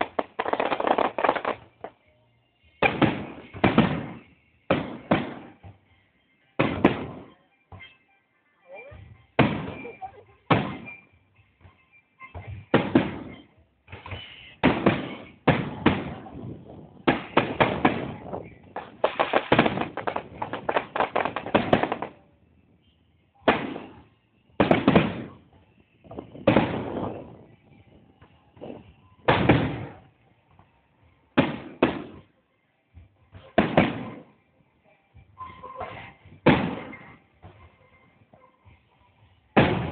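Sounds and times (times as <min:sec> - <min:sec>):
rapid fireworks bangs and crackle: 0:00.0 - 0:02.0, 0:02.8 - 0:05.8, 0:06.6 - 0:07.3, 0:09.4 - 0:11.0, 0:12.6 - 0:22.3, 0:23.4 - 0:30.2, 0:31.4 - 0:32.3, 0:33.4 - 0:34.4, 0:35.9 - 0:37.6, 0:39.5 - 0:39.9
fireworks booming: 0:02.8 - 0:05.8, 0:06.6 - 0:07.3, 0:09.4 - 0:11.0, 0:12.7 - 0:22.2, 0:23.5 - 0:27.6, 0:28.6 - 0:30.1, 0:31.4 - 0:32.2, 0:33.6 - 0:34.3, 0:36.4 - 0:37.1, 0:39.6 - 0:39.9.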